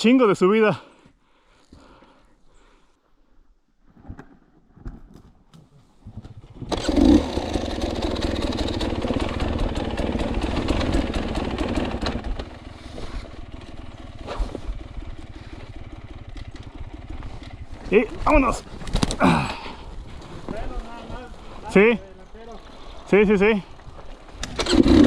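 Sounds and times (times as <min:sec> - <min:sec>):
motorcycle engine starting and idling: 0:06.2 - 0:25.0.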